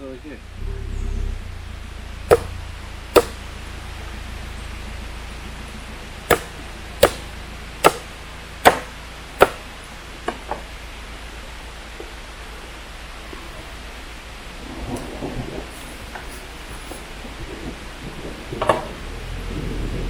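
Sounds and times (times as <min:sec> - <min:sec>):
sharp chopping strikes: 0:02.3 - 0:02.6, 0:03.2 - 0:03.4, 0:06.3 - 0:09.7.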